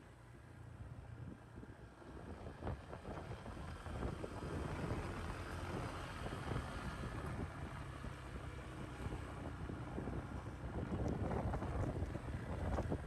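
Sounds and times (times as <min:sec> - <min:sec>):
wind buffeting microphone: 0:09.0 - 0:13.0.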